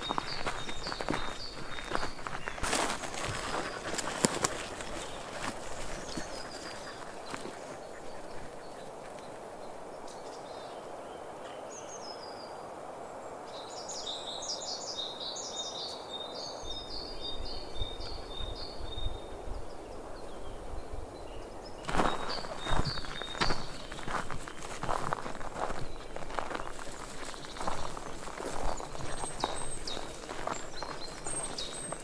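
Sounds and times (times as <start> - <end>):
songbird chirping: 0.0 - 32.0
wind rumbling on microphone: 16.6 - 32.0.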